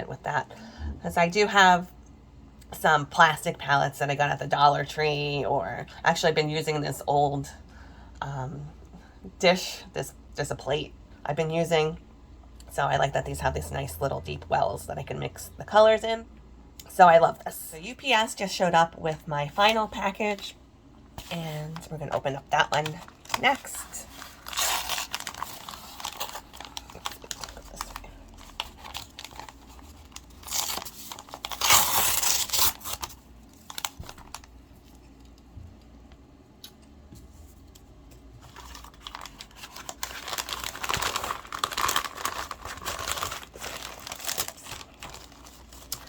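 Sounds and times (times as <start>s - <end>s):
packaging tearing and crinkling: 22.8s - 34.5s, 38.4s - 46.0s.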